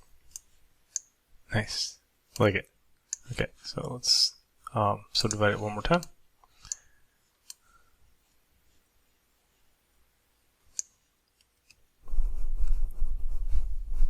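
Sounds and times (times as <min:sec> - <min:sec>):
computer mouse clicks: 0:10.7 - 0:11.8.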